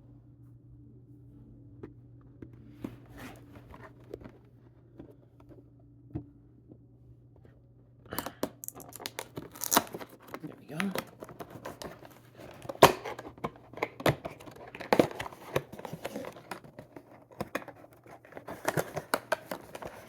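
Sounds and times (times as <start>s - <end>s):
packaging rustling and clicking: 8.5s - 20.0s
packaging tearing and crinkling: 8.6s - 20.0s.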